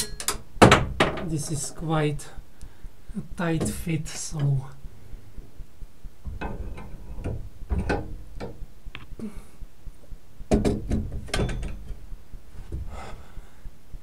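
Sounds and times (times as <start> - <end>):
heavy metal clock parts clanking: 0.0 - 0.4, 10.5 - 12.0.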